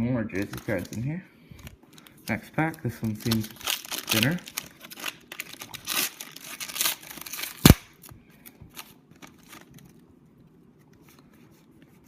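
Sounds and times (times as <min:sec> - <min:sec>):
wrapper tearing and crinkling: 0:00.3 - 0:08.1, 0:08.7 - 0:10.0
cards rustling and ticking: 0:00.3 - 0:10.1
sharp wrapper snap: 0:03.1 - 0:08.2.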